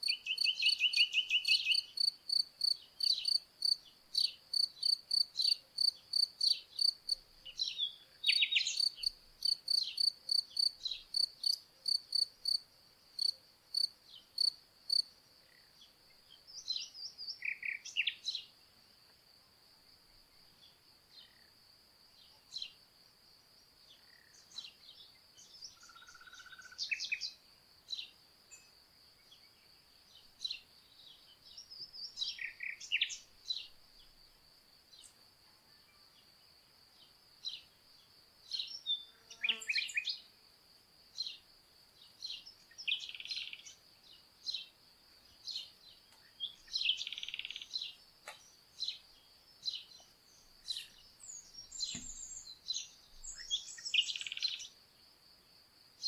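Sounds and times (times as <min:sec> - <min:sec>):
crickets trilling: 0:00.0 - 0:07.3, 0:08.2 - 0:12.6, 0:13.2 - 0:15.1, 0:30.4 - 0:40.3, 0:41.0 - 0:55.9
songbirds chirping: 0:00.0 - 0:56.0.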